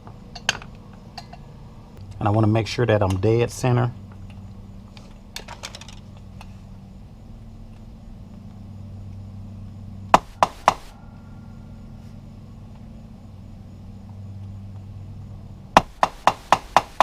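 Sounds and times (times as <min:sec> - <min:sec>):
hammer tapping metal punch: 0:10.2 - 0:10.9.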